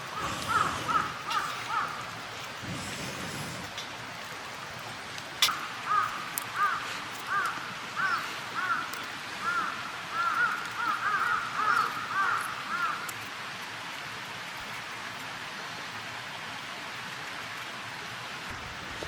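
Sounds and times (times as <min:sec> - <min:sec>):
crows cawing: 0:00.0 - 0:02.1, 0:05.4 - 0:13.1
background hiss: 0:00.0 - 0:16.8.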